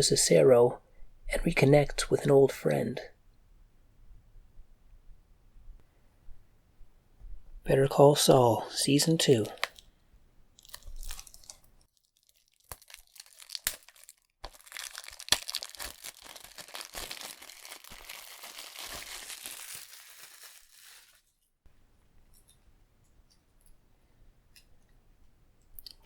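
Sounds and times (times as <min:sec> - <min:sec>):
plastic wrapping crinkling and tearing: 0:09.4 - 0:09.9, 0:10.6 - 0:21.4.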